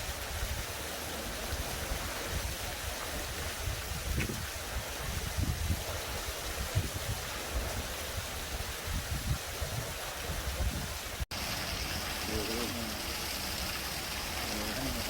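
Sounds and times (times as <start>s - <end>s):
wind buffeting microphone: 0.0s - 11.2s.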